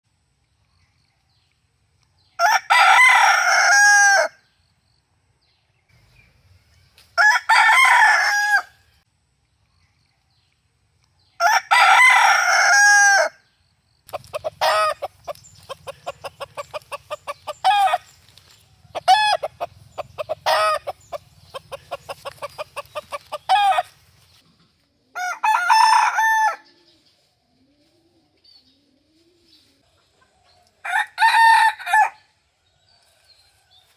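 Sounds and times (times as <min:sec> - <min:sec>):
rooster crowing: 0:02.4 - 0:04.4, 0:07.2 - 0:08.8, 0:11.4 - 0:13.4, 0:14.4 - 0:15.1, 0:15.8 - 0:18.2, 0:18.9 - 0:19.6, 0:20.2 - 0:21.2, 0:22.8 - 0:23.9, 0:25.2 - 0:26.8, 0:30.8 - 0:32.3
chicken clucking: 0:14.1 - 0:25.7, 0:26.6 - 0:31.0.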